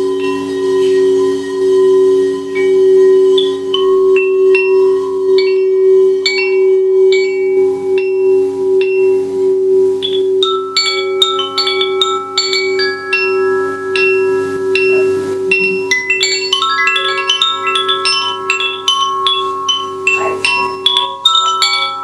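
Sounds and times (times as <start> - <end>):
singing bowl drone: 0.0 - 22.0
struck chime notes: 10.0 - 22.0.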